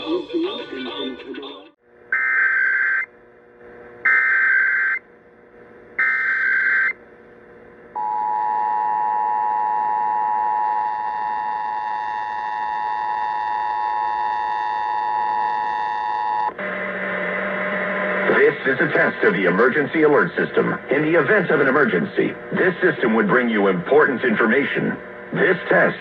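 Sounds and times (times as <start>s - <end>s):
data burst tones: 4.1s - 5.0s.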